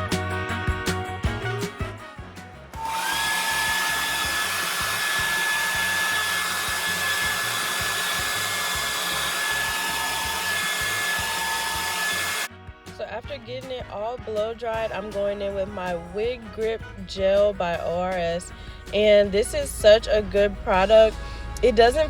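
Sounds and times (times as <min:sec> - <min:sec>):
hair dryer running: 0:02.8 - 0:12.5.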